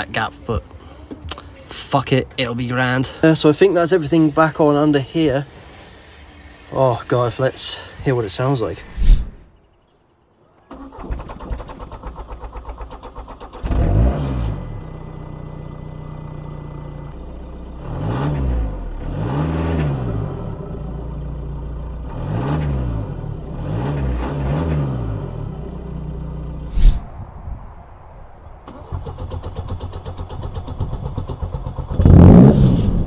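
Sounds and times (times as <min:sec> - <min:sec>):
diesel engine idling and revving: 0:11.0 - 0:26.9, 0:28.6 - 0:33.0
starter motor cranking: 0:28.7 - 0:32.2.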